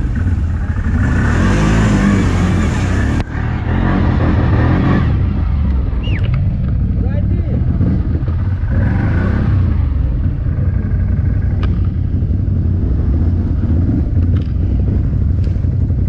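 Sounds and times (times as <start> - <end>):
atv engine rumble: 0.0 - 16.0
click: 5.7 - 6.4.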